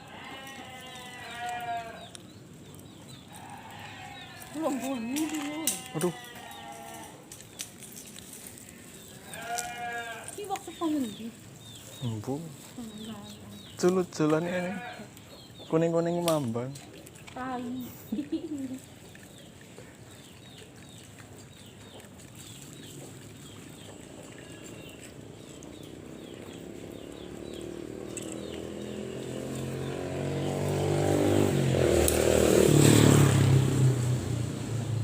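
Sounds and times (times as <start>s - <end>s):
small birds chirping: 0.0s - 33.5s
vehicle engine approaching: 25.1s - 35.0s.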